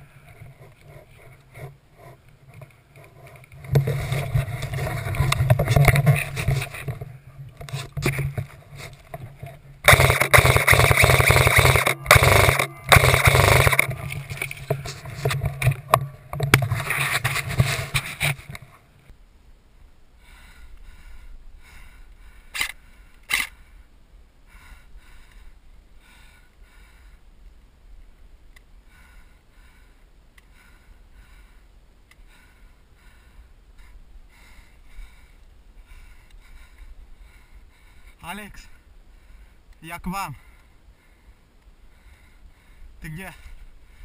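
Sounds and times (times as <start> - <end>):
loud scraping and rustling: 0.4 - 18.8
sharp clicks: 9.8 - 17.0, 22.5 - 23.6
faint ticks: 25.2 - 25.6, 26.3 - 34.0, 34.9 - 37.3, 39.3 - 42.3.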